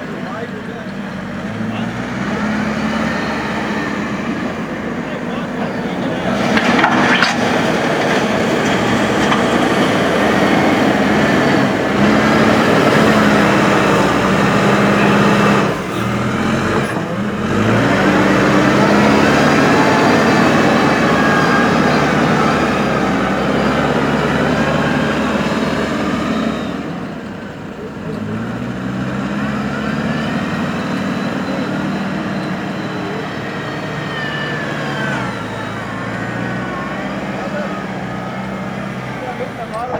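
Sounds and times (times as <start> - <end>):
diesel engine running hard: 0.0 - 39.9
thin high squeals: 5.6 - 10.6.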